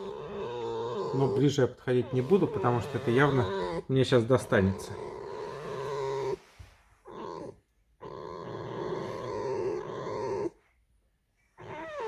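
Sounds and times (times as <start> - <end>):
fox growling warning call: 0.0 - 6.4.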